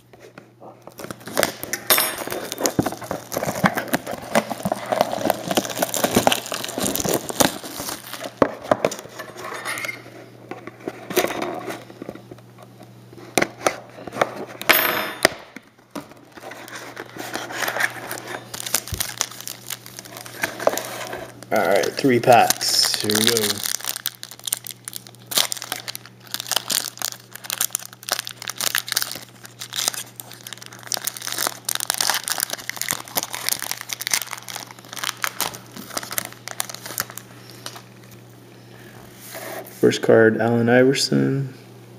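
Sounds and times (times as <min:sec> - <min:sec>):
plastic wrap crinkling and tearing: 0:00.8 - 0:09.4, 0:16.1 - 0:38.2.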